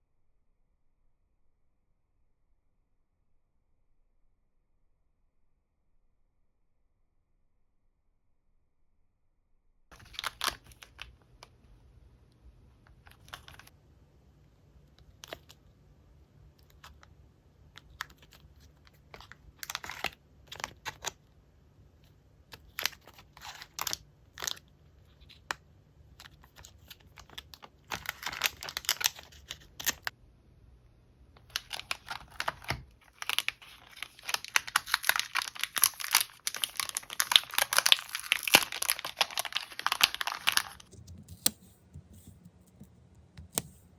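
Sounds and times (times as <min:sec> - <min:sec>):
plastic packaging crinkling: 0:09.9 - 0:11.1, 0:17.8 - 0:21.2, 0:22.6 - 0:25.5, 0:26.2 - 0:30.1, 0:31.4 - 0:40.9
paper goods tapping and rustling: 0:26.2 - 0:30.1, 0:31.4 - 0:41.3.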